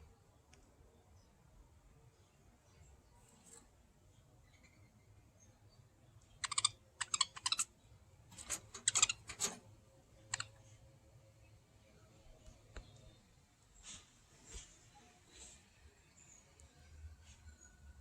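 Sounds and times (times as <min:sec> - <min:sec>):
budgerigars chirping: 0:06.3 - 0:07.7.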